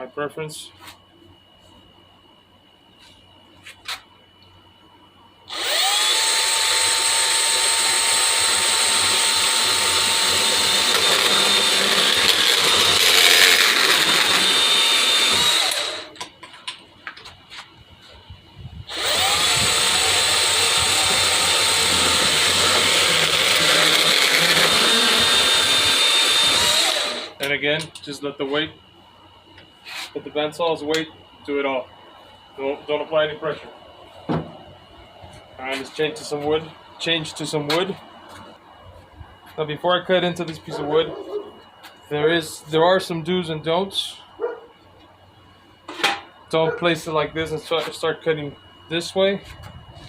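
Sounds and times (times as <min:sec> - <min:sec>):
band saw cutting plastic pipe: 0:05.5 - 0:16.2, 0:18.9 - 0:27.4.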